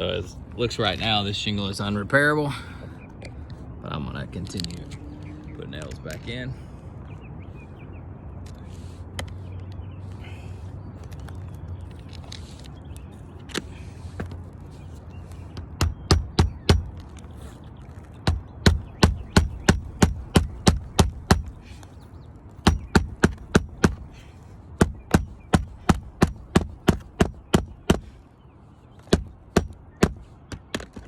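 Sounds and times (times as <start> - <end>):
hammer driving nails into shingles: 15.5 - 17.1, 18.2 - 21.9, 22.6 - 28.2, 29.0 - 31.0.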